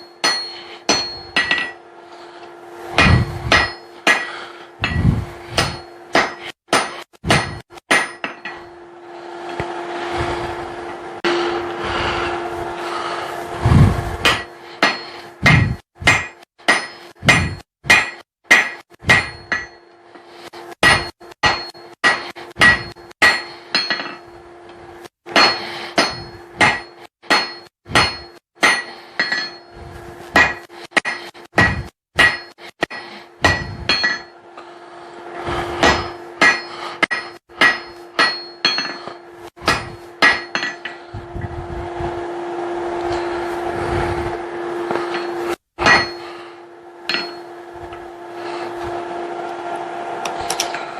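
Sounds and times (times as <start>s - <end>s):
hammer striking steel on anvil: 0.0s - 9.8s, 14.2s - 24.4s, 25.3s - 34.7s, 35.7s - 41.4s, 44.8s - 48.8s, 50.2s - 50.9s
steady hum: 0.0s - 50.9s.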